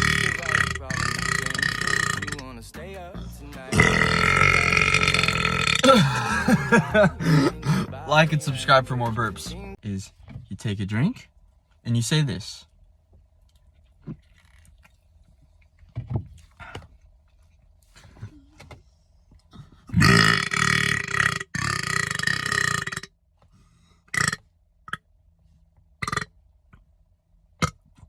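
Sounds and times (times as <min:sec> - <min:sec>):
man burping loudly: 0:00.0 - 0:09.8, 0:19.9 - 0:23.0.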